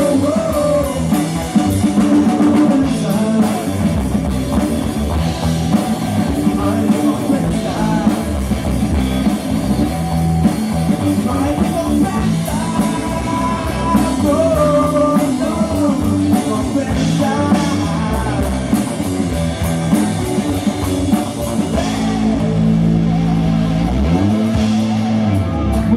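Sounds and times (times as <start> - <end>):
person singing: 0.0 - 4.0, 6.2 - 8.6, 10.9 - 19.0
drum kit: 0.0 - 25.9
electric guitar: 0.0 - 25.9.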